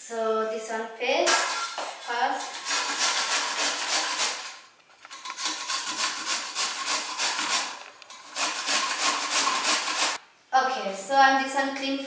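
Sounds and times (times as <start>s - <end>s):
vegetable rasping on hand grater: 2.4s - 4.5s, 5.1s - 10.2s.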